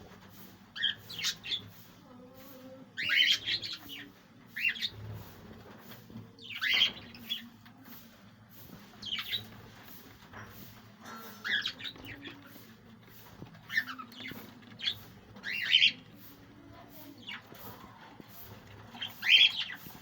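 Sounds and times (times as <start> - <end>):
budgerigars squawking and chirping: 0.8 - 1.8, 3.0 - 5.2, 6.4 - 7.5, 9.0 - 9.7, 11.0 - 16.3, 18.4 - 20.0.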